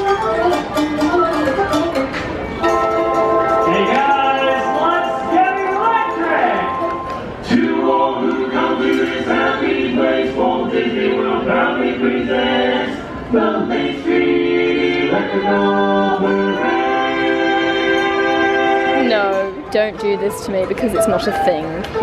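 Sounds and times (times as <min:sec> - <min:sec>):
group singing in harmony: 0:02.6 - 0:19.6.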